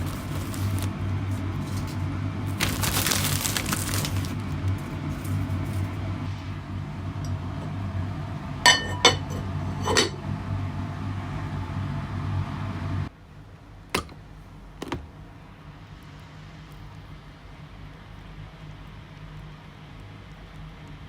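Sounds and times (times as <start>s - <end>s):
low hum: 0.0s - 13.1s
tableware clinking: 8.7s - 10.2s.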